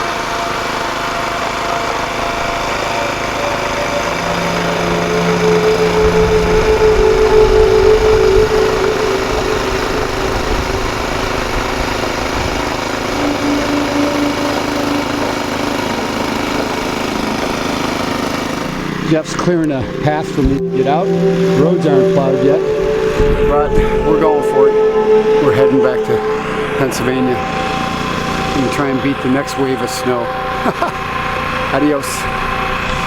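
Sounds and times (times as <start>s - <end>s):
snowblower engine running: 10.6s - 19.9s.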